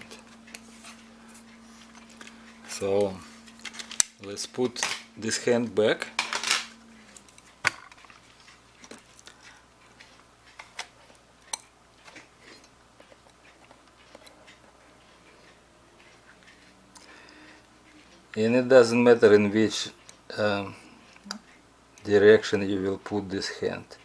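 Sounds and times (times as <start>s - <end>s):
metal tool clicking on watch: 11.4s - 11.7s.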